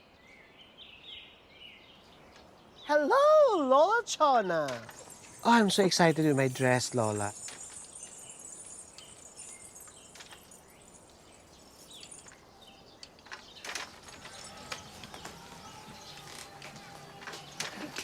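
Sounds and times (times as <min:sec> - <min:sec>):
faint bird chirps: 0:04.7 - 0:18.0.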